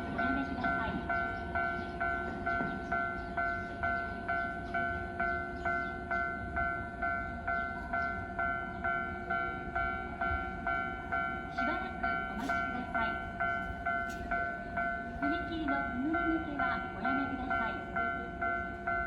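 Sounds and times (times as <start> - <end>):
level-crossing warning bell: 0.0 - 19.0.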